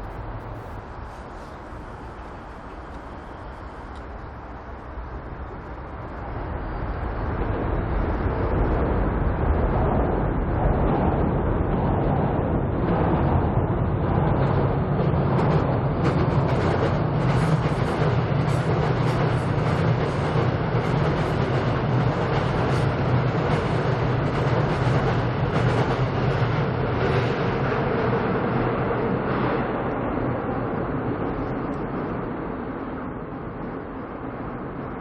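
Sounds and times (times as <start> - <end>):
train wheels rattling on track: 12.3 - 32.3.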